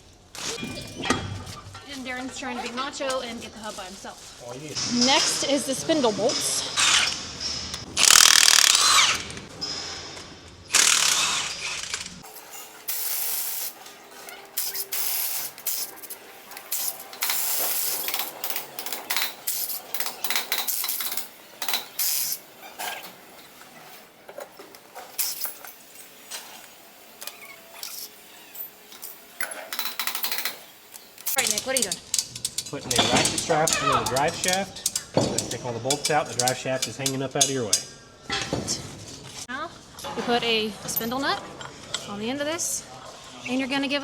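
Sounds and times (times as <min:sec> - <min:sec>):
ratchet wrench clicking: 0:08.0 - 0:09.3, 0:10.7 - 0:12.2, 0:14.6 - 0:22.4, 0:25.2 - 0:26.4, 0:27.2 - 0:37.9
metal tools clattering: 0:12.2 - 0:26.6, 0:27.2 - 0:39.3.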